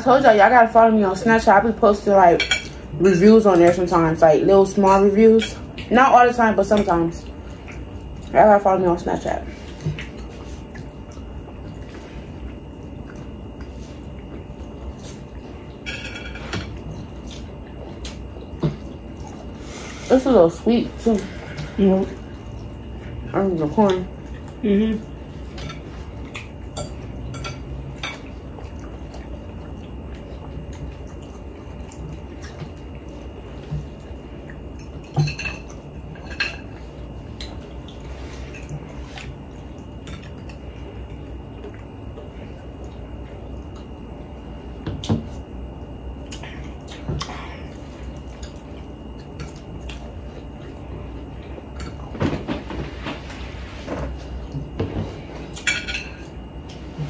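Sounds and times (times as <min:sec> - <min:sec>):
steady low hum: 0:00.0 - 0:57.0
cutlery clinking on plates: 0:55.6 - 0:56.3.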